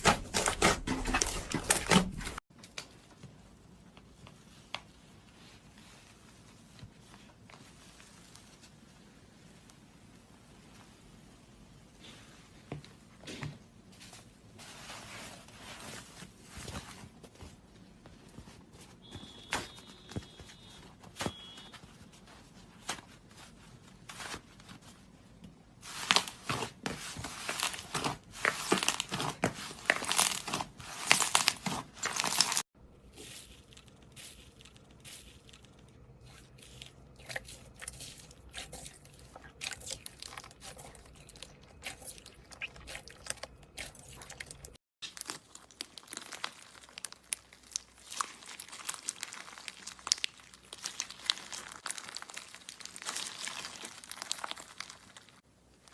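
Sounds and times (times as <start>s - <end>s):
slime squished crackling: 25.8s - 55.9s.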